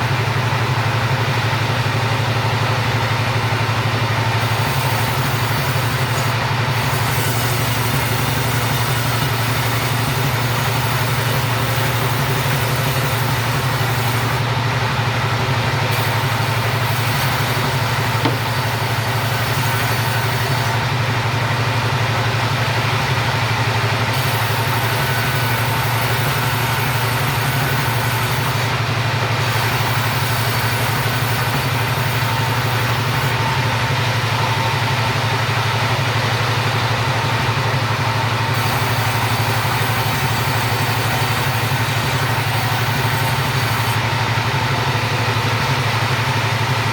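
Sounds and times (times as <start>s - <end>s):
chainsaw cutting timber: 4.2s - 21.7s, 23.5s - 34.8s, 37.6s - 45.5s.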